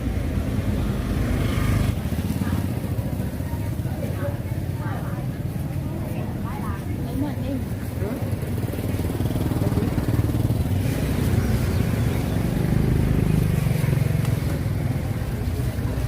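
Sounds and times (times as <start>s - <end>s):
small engine running: 8.0s - 14.6s.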